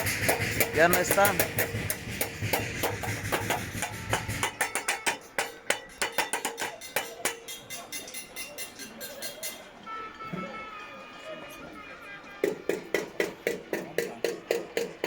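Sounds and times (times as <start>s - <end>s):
metal tools clattering: 3.2s - 9.8s.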